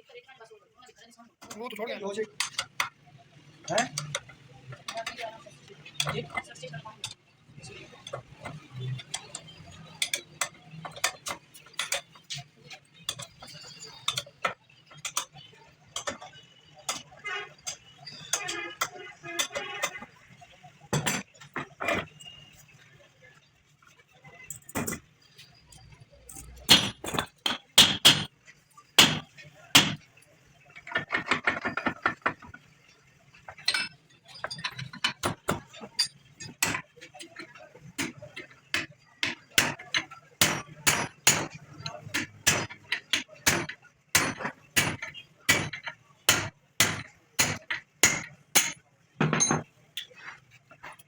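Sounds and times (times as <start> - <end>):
metallic knocks and clinks: 5.8 - 22.4, 24.4 - 28.3, 30.7 - 51.0.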